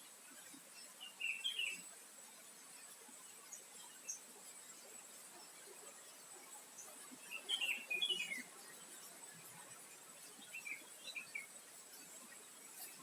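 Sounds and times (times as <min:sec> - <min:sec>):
small bird chirping: 0:00.9 - 0:01.9, 0:06.8 - 0:08.6, 0:10.3 - 0:11.5.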